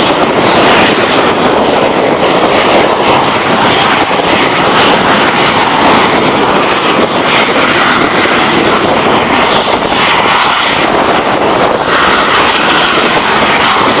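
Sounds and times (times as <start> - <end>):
jets taking off: 0.0 - 14.0.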